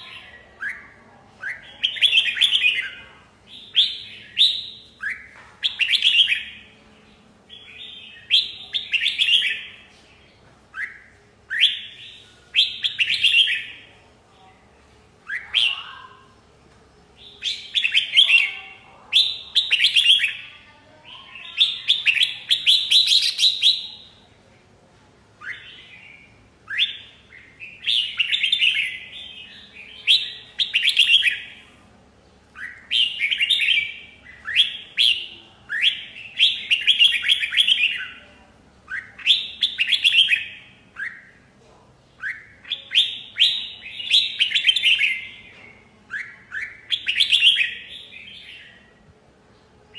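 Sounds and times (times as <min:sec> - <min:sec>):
bulbul singing: 0:00.0 - 0:09.9, 0:10.7 - 0:13.9, 0:17.1 - 0:24.3, 0:25.4 - 0:31.8, 0:32.4 - 0:41.6, 0:42.2 - 0:49.1.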